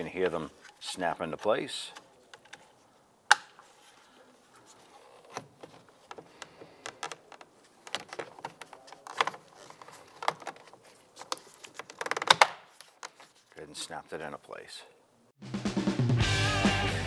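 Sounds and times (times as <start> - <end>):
plastic clicks and knocks: 5.3 - 13.2.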